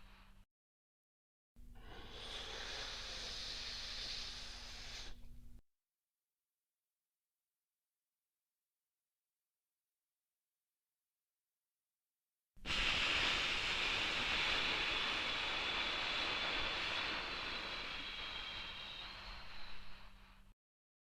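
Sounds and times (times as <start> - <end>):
breathy exhale through pursed lips: 1.7 - 5.4, 12.7 - 20.5.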